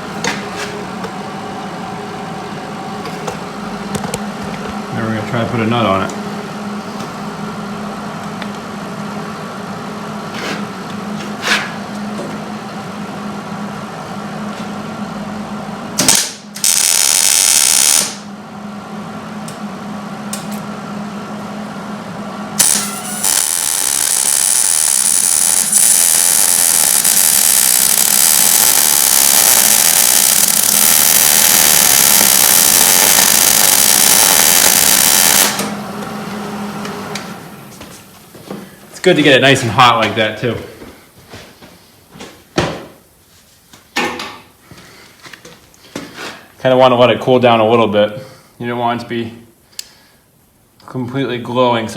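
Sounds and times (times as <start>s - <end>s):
arc welding: 16.0s - 18.3s, 22.6s - 35.8s.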